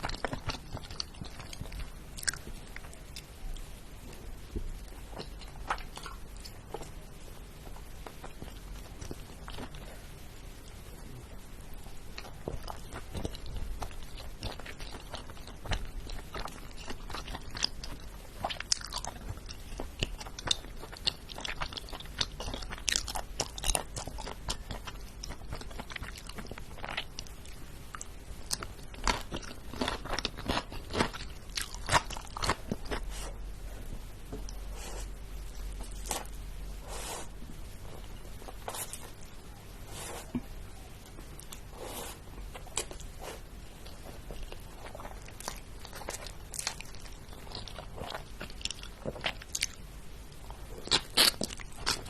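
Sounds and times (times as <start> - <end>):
crunchy food being chewed: 0.0 - 7.0, 7.6 - 10.8, 12.1 - 33.4, 34.4 - 39.3, 39.9 - 52.0.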